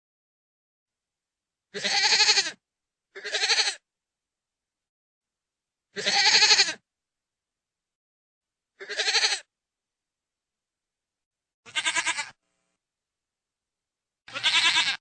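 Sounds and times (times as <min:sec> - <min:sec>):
goat bleating: 0:01.7 - 0:02.6, 0:03.2 - 0:03.8, 0:06.0 - 0:06.8, 0:08.8 - 0:09.5, 0:11.6 - 0:12.4, 0:14.3 - 0:15.0.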